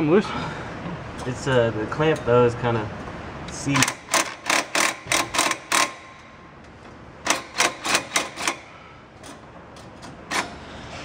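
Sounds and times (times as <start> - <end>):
hand tool clicking: 3.8 - 6.0.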